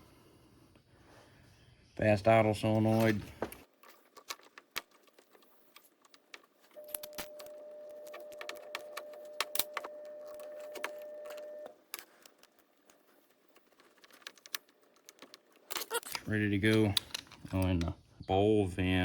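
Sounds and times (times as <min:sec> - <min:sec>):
metal parts clinking: 0:03.0 - 0:17.8.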